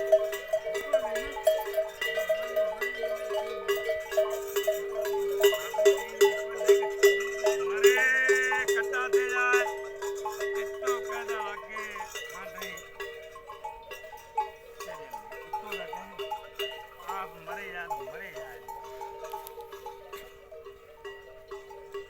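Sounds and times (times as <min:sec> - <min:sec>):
livestock neck bells clinking: 0:00.0 - 0:22.0
animal bleats: 0:10.9 - 0:12.9.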